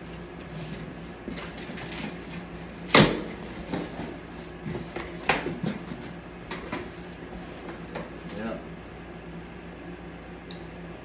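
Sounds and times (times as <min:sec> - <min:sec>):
cardboard rustling: 0:00.0 - 0:08.4.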